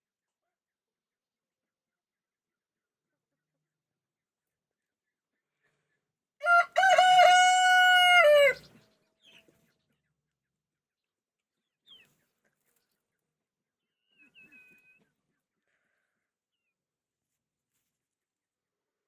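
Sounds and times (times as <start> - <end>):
rooster crowing: 6.4 - 8.7.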